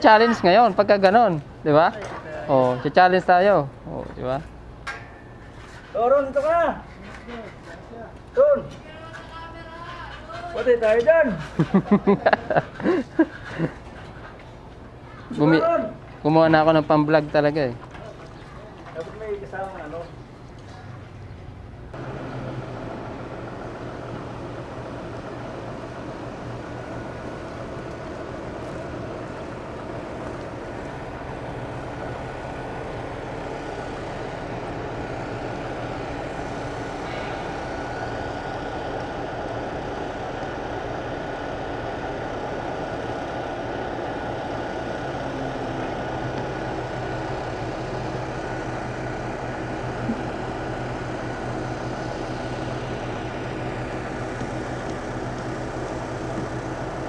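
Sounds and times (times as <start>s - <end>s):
engine humming with faint whine: 19.2s - 57.0s.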